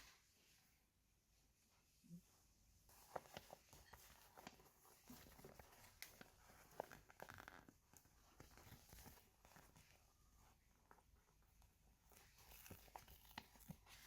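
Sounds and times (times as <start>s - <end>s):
soft rustling: 0.0s - 14.0s.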